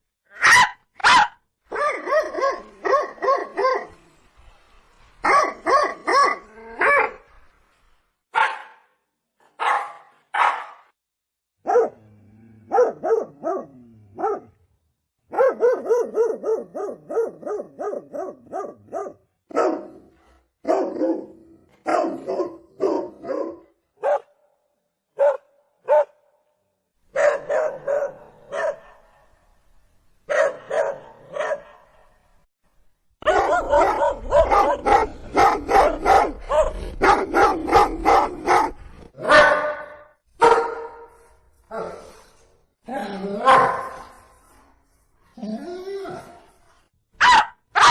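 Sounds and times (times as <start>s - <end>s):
small dog yappy barking: 0.4s - 1.3s, 47.2s - 47.9s.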